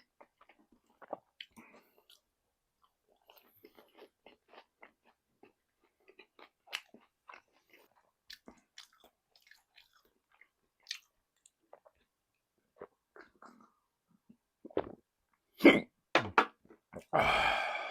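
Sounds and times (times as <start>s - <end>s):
crunchy fried chicken chewing: 2.9s - 12.1s.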